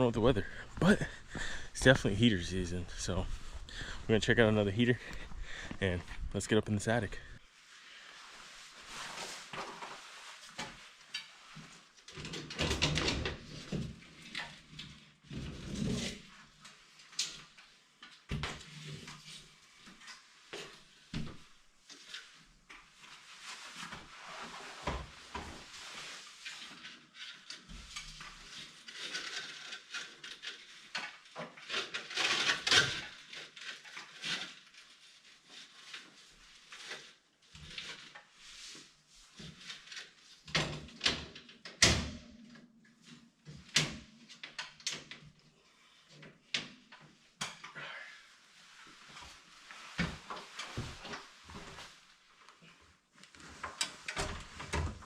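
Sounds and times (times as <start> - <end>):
rustling: 7.1 - 11.8.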